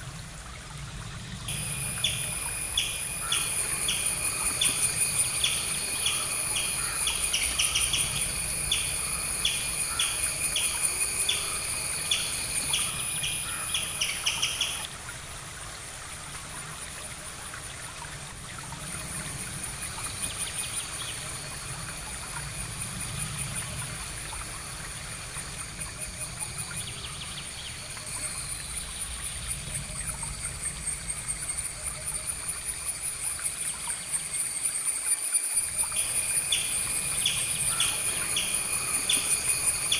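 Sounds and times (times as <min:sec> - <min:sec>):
bird chirping: 0:01.5 - 0:14.9.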